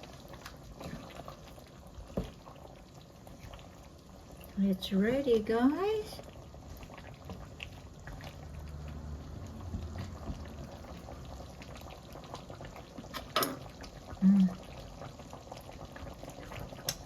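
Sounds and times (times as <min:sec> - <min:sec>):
curry bubbling in a pan: 0:00.0 - 0:17.0.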